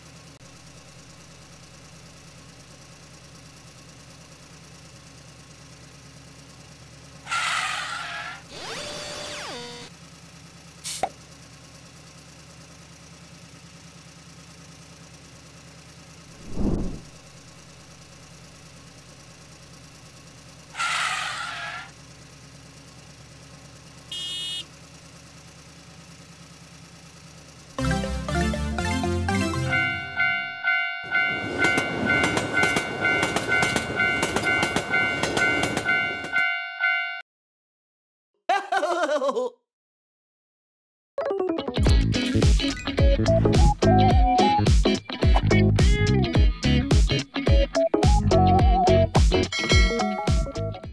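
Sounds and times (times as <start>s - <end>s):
vehicle engine idling: 0.0s - 37.0s, 42.0s - 50.9s
loud low burst: 16.4s - 17.2s
level crossing warning bell: 27.8s - 37.2s, 49.5s - 50.3s
train wheels clattering over joints: 31.4s - 36.4s.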